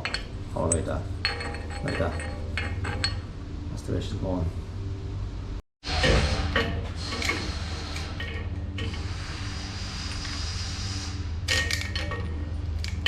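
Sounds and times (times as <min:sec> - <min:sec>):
metal pipe fittings clinking: 0:00.0 - 0:03.3, 0:06.0 - 0:09.1, 0:11.5 - 0:13.0
low mechanical hum: 0:00.0 - 0:13.0.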